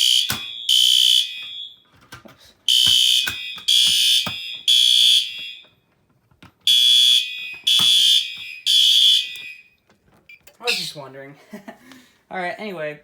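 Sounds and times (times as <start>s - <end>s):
fire alarm horn blasts: 0.0s - 1.9s, 2.7s - 5.8s, 6.7s - 9.8s.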